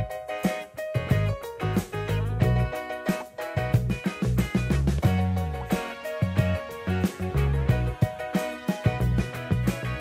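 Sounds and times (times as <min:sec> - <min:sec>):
plucked guitar-like melody: 0:00.0 - 0:10.0
bouncing bass line: 0:01.0 - 0:02.8, 0:03.6 - 0:08.1, 0:08.9 - 0:10.0.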